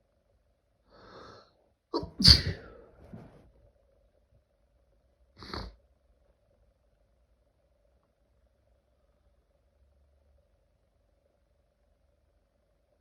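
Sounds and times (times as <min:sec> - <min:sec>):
person sneezing: 0:02.0 - 0:03.3, 0:05.4 - 0:05.7.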